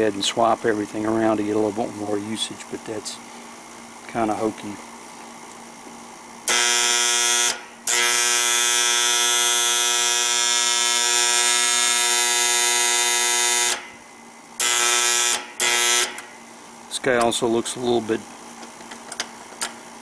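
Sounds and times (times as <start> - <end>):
contactor coil buzzing: 5.8 - 18.4.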